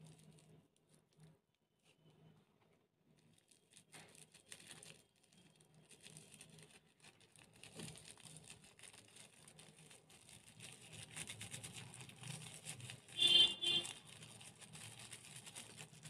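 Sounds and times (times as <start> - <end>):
crunchy slime crackling: 3.5 - 16.0.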